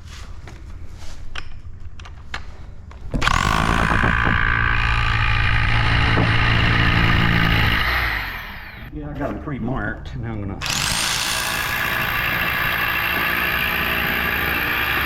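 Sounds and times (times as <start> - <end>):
hammer drill drilling into concrete: 3.2 - 8.9, 10.6 - 15.0.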